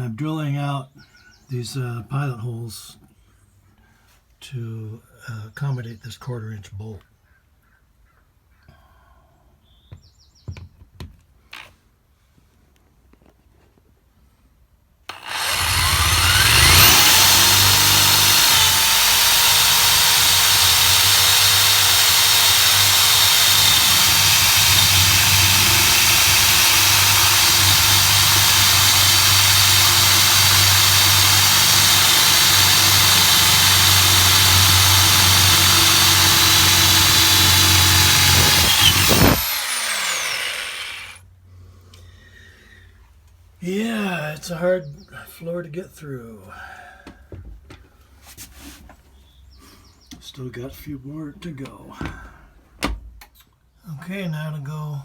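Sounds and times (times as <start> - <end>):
electric drill boring a hole: 15.1 - 41.2.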